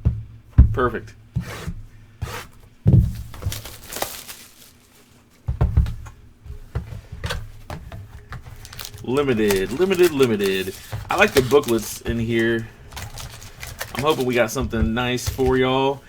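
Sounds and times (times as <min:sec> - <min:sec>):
cardboard packaging rustling: 0:02.2 - 0:16.0
soft thumps: 0:05.4 - 0:16.0.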